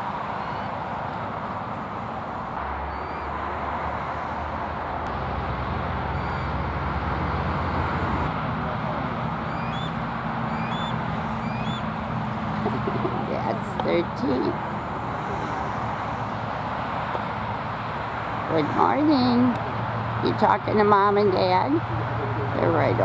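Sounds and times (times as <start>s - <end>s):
steady rumble: 4.3s - 23.0s
eagle chirping peeps: 6.2s - 6.6s, 9.5s - 11.9s.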